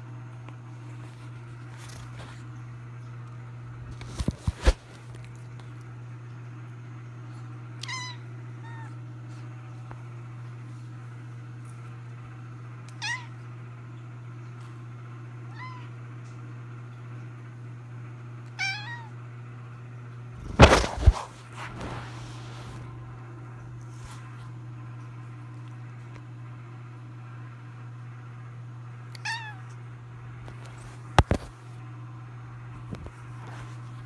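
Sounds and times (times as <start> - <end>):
steady low hum: 20.2 - 25.7
cat meowing: 29.2 - 29.6.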